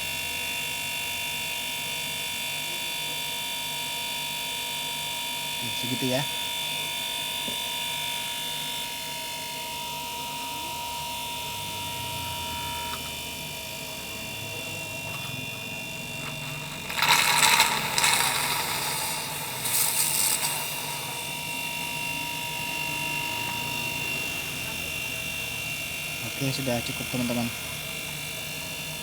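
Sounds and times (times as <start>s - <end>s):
refrigerator compressor humming: 5.5s - 29.0s
loud hissing bursts: 16.2s - 22.1s.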